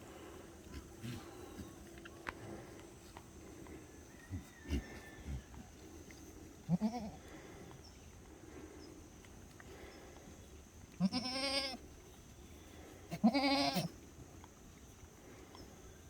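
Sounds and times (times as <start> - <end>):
goats bleating: 6.7 - 7.2, 11.0 - 11.8, 13.1 - 14.0.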